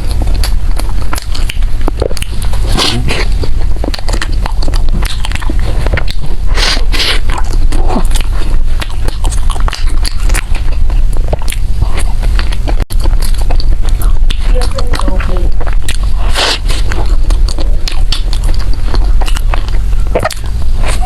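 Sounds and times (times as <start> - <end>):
person chewing crunchy food: 0.0 - 21.0
steady low hum: 0.0 - 21.0.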